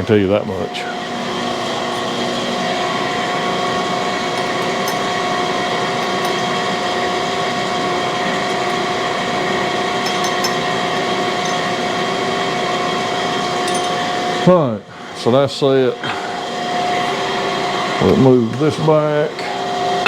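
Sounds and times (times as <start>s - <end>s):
machine motors whining: 15.2s - 20.0s.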